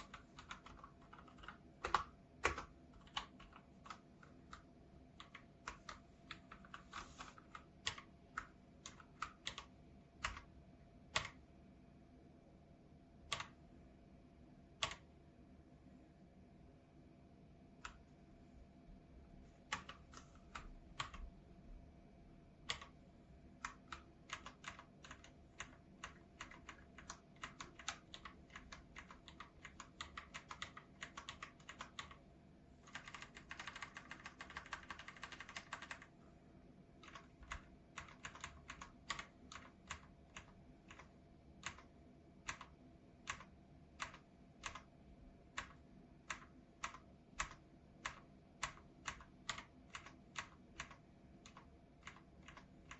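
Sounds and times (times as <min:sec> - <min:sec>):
typing on mechanical keyboard: 0:00.0 - 0:10.5, 0:11.1 - 0:11.4, 0:13.3 - 0:13.6, 0:14.8 - 0:15.1, 0:19.7 - 0:21.3, 0:22.6 - 0:23.0, 0:23.6 - 0:32.2, 0:32.8 - 0:36.1, 0:37.0 - 0:44.9, 0:45.5 - 0:52.9.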